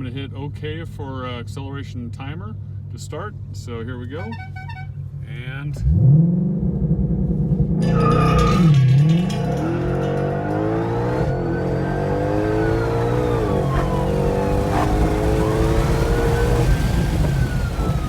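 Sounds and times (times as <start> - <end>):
car engine at full throttle: 5.3 - 18.0
siren wailing: 7.8 - 18.0.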